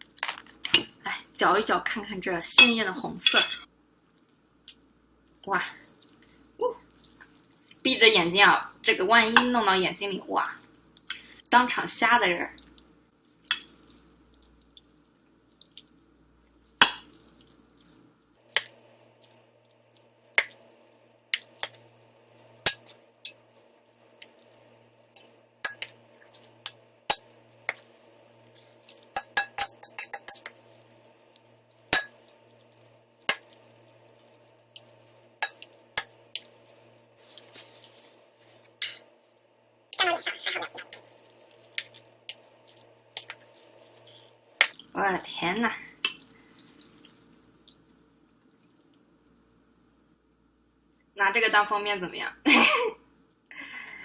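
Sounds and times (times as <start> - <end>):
utensils clinking against bowl: 28.9 - 30.6, 34.8 - 36.5.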